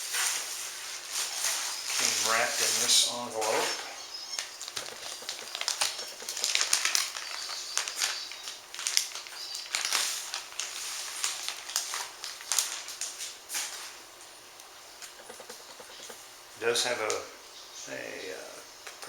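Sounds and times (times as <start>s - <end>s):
packaging rustling and crinkling: 0.2s - 14.0s.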